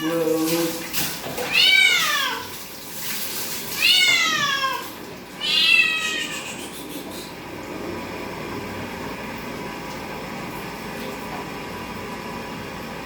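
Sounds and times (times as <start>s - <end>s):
cat meowing loudly: 1.4s - 2.6s, 3.8s - 6.6s.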